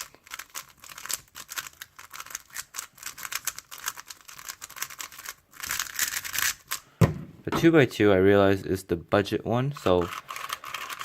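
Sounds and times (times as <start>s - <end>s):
plastic cube clicks and clacks: 0.0s - 6.8s, 9.8s - 11.0s.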